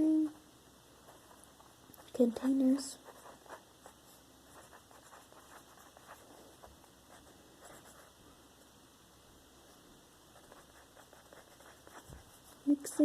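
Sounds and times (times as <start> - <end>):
pen scratching on paper: 3.0 - 8.1, 10.4 - 13.0.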